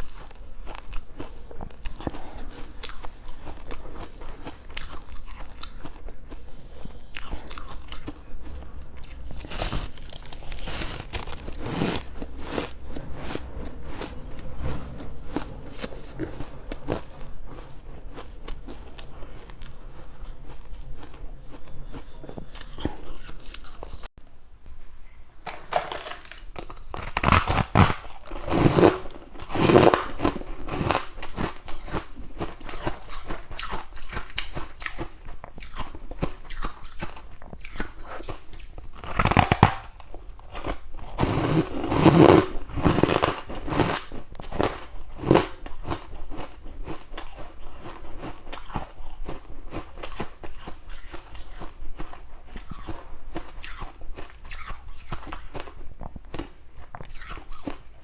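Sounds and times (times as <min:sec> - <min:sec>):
chewing ice crunches: 0:00.0 - 0:24.1, 0:26.3 - 0:57.9.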